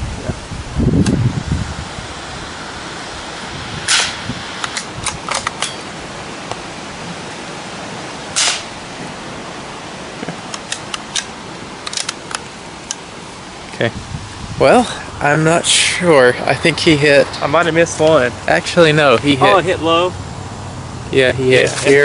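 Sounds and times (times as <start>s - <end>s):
wind hiss: 0.0s - 22.0s
rifle bolt metallic clicks: 3.9s - 5.8s, 10.5s - 13.0s
soft rifle shots: 8.4s - 8.7s.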